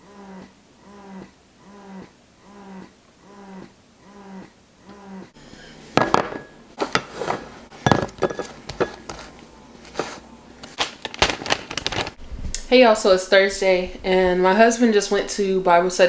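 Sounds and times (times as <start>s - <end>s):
clinks and knocks of dishes: 5.6s - 9.3s.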